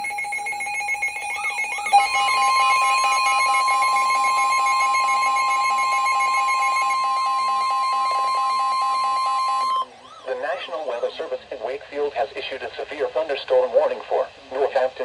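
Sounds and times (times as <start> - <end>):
chattering electronic tone: 0.0 - 9.8
pulsing low tone: 0.0 - 9.8
steady attention tone: 0.0 - 9.9.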